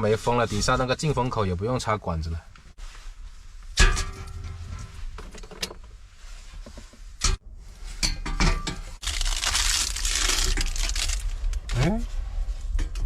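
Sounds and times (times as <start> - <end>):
stove parts clattering: 3.8 - 5.8, 8.0 - 9.0.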